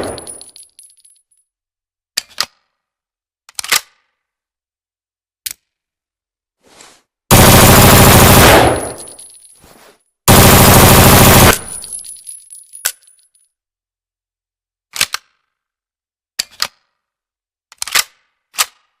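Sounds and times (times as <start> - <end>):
submachine gun bursts: 7.3 - 9.0, 10.3 - 11.9.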